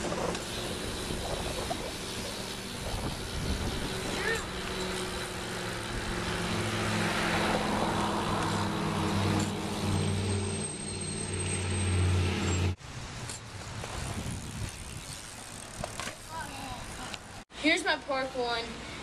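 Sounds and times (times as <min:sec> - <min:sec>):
engine running with low hum: 0:00.0 - 0:12.8.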